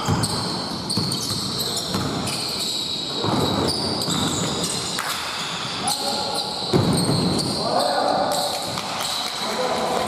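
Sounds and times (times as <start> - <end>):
basketball bouncing on wooden court: 0.0 - 2.4, 6.7 - 7.5
sneakers squeaking on floor: 0.0 - 9.3.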